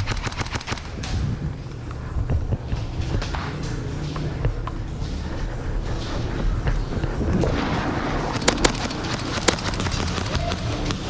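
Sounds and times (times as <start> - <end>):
airsoft gun shots: 8.5 - 11.0.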